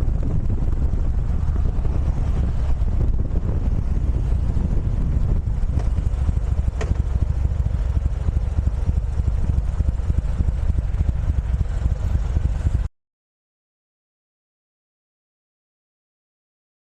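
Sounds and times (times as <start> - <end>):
vehicle engine rumbling: 0.0 - 12.9.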